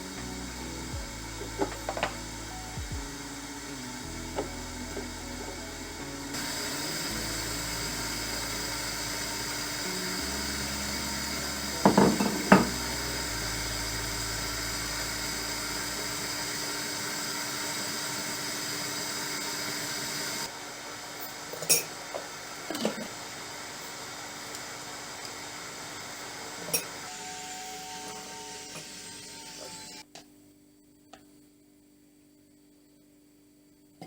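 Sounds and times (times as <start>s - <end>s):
appliance motor whirring: 0.0s - 20.5s, 26.2s - 30.0s.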